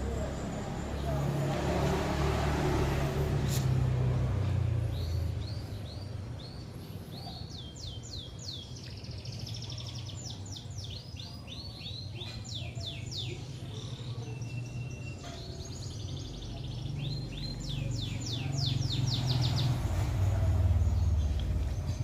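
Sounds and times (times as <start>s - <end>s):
songbird chirps and trills: 0.0s - 22.0s.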